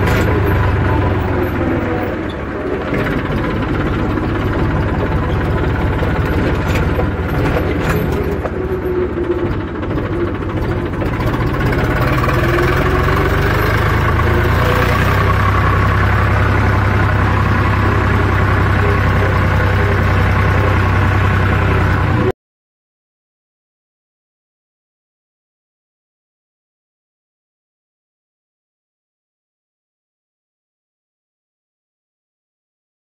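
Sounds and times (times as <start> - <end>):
tractor diesel engine running: 0.0 - 22.3.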